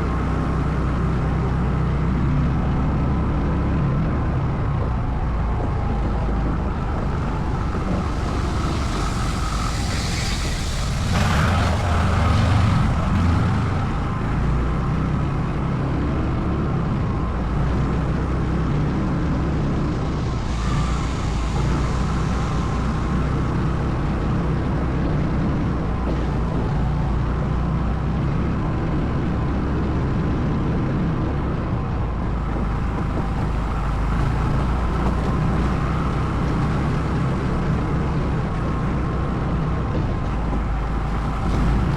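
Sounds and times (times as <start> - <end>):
rush of noise: 0.0 - 41.9.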